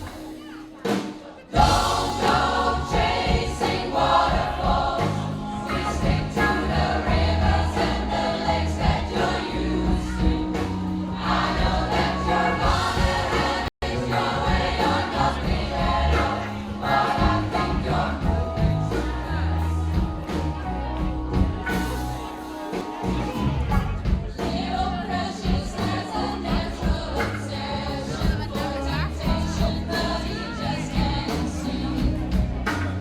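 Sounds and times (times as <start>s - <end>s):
instrumental accompaniment with beat: 0.0s - 33.0s
pop choir singing: 0.8s - 33.0s.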